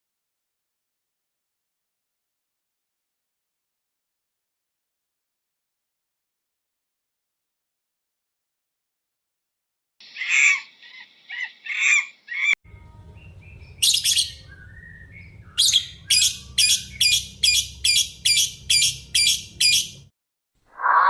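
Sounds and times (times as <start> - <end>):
bird chirping: 10.0 - 20.1.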